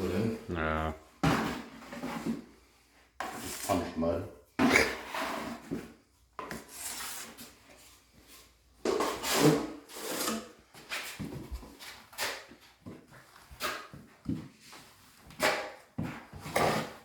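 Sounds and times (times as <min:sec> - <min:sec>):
drywall knife scraping: 0:03.2 - 0:03.9, 0:04.6 - 0:07.6, 0:08.9 - 0:11.2, 0:15.3 - 0:17.0.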